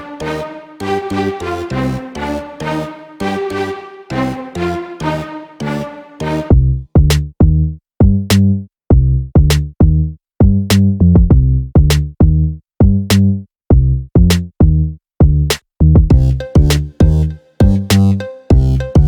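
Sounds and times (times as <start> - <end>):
deep choppy bass line: 6.5 - 19.0
electronic music with drum machine: 16.1 - 19.0.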